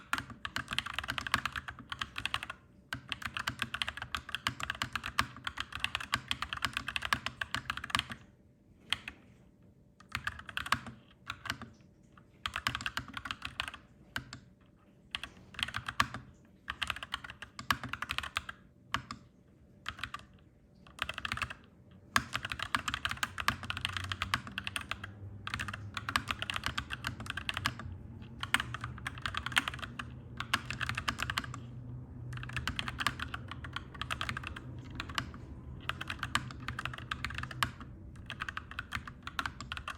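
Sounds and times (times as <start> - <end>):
mechanical keyboard typing: 0.0 - 9.2, 10.0 - 11.8, 12.4 - 39.9.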